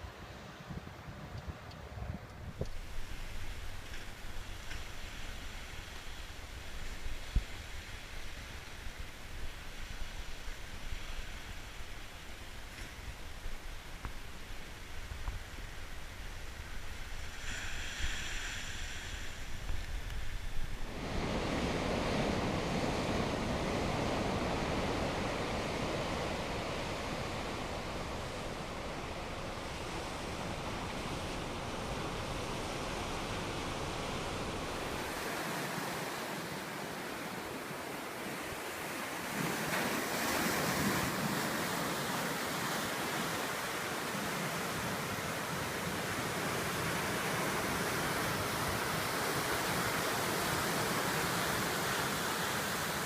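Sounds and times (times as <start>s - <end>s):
wind on microphone: 0.6s - 35.2s
waves breaking on shore: 2.6s - 53.0s.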